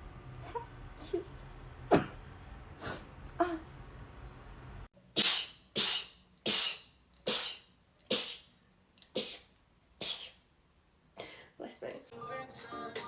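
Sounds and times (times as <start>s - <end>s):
person sneezing: 5.2s - 8.5s, 9.1s - 10.4s.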